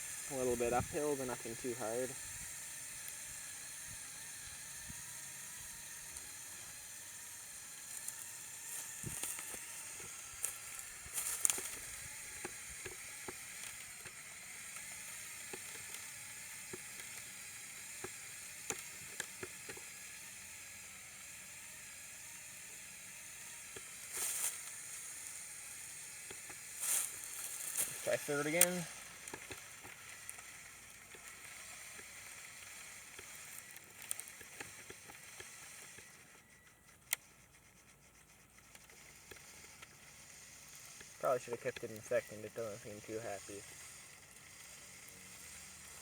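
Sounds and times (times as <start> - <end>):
toy motors and gears whirring: 0.0 - 46.0
tyres crackling on twigs and dirt: 5.6 - 19.9, 23.8 - 36.3.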